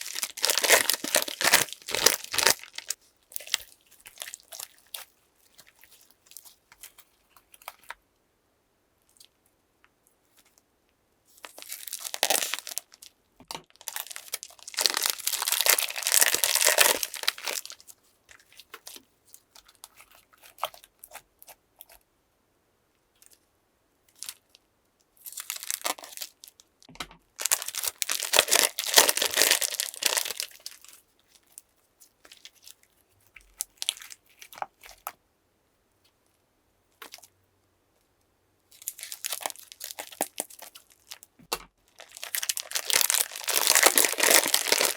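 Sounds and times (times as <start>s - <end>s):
slime crinkling in plastic bags: 0.0s - 7.0s, 11.4s - 17.9s, 24.2s - 24.4s, 25.2s - 26.7s, 27.4s - 31.5s, 33.5s - 35.0s, 38.8s - 44.9s.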